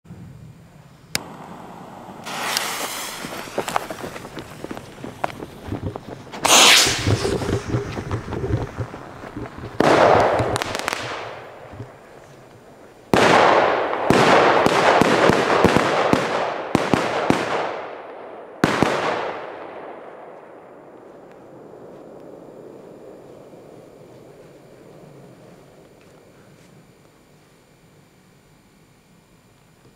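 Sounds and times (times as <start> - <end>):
firework bangs with rumbling echo: 2.2 - 12.1, 13.1 - 18.0.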